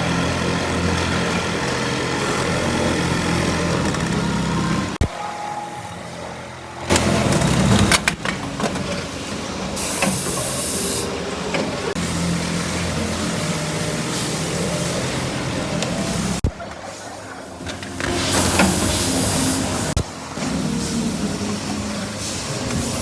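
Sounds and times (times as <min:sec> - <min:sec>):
air hissing: 0:09.7 - 0:11.3, 0:18.1 - 0:23.0.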